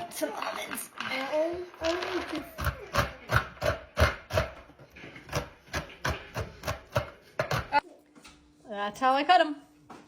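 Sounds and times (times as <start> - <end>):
knife chopping nuts on cutting board: 5.3 - 7.8.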